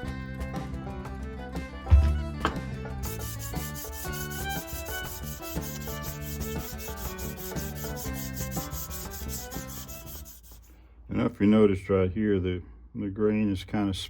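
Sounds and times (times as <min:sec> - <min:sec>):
background music: 0:00.0 - 0:10.4
hand scraper shaving wood: 0:03.0 - 0:10.7.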